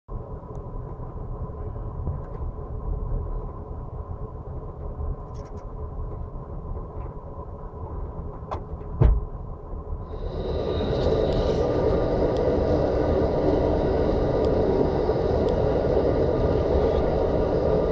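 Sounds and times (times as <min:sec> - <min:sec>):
faint steady hum: 0:00.1 - 0:17.9
train rumble from on board: 0:00.1 - 0:17.9.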